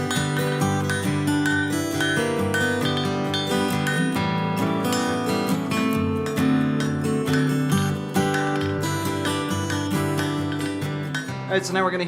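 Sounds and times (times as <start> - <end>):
acoustic guitar music: 0.0 - 12.0.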